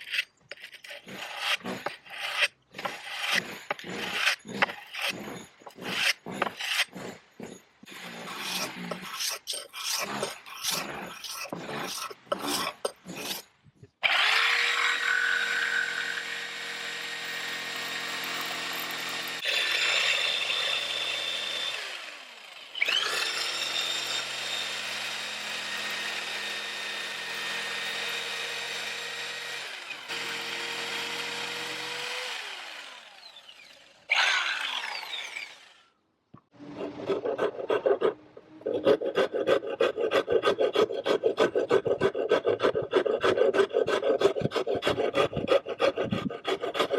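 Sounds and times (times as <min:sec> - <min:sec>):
hand filing strokes: 0:00.0 - 0:13.5, 0:36.7 - 0:46.9
angle grinder whining: 0:29.6 - 0:36.0.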